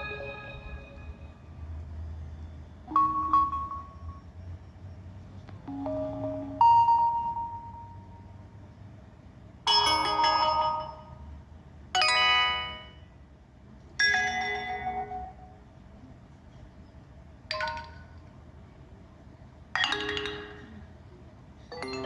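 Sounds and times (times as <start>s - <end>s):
phone notification chimes: 2.9s - 4.2s, 5.7s - 8.2s, 12.0s - 13.0s.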